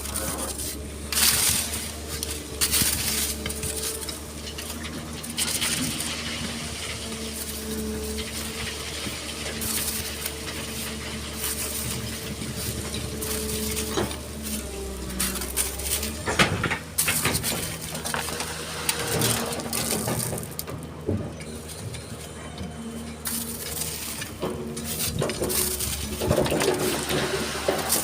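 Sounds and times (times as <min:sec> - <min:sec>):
stones clattering in steel bucket: 0:00.0 - 0:21.0, 0:23.1 - 0:28.0
diesel engine running: 0:00.0 - 0:28.0.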